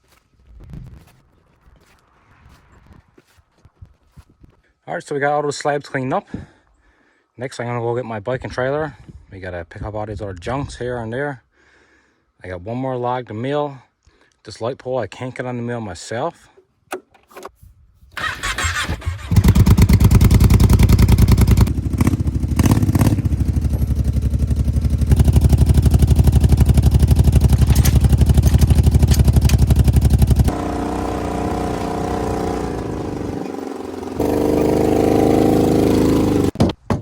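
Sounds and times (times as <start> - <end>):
atv engine revving: 18.2 - 36.6.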